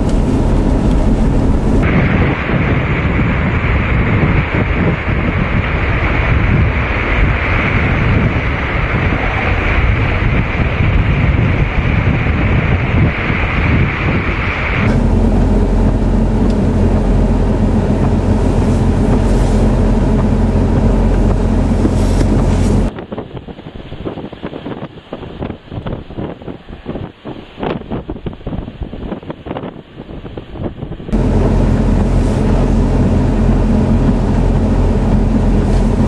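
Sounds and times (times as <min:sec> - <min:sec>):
steady low hum: 0:00.0 - 0:22.9, 0:31.1 - 0:36.0
storm wind buffeting microphone: 0:00.0 - 0:36.0.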